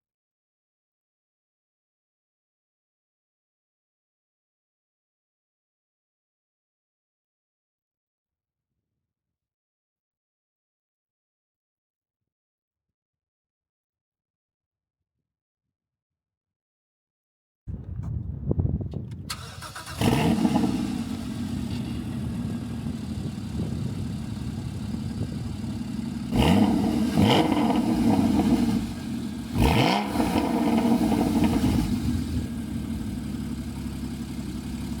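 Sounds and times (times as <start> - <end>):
car engine idling and revving: 17.7 - 35.0.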